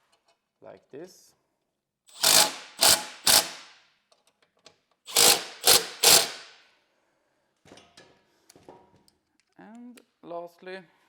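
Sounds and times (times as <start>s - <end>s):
power screwdriver driving screws: 2.1s - 3.7s, 5.1s - 6.6s.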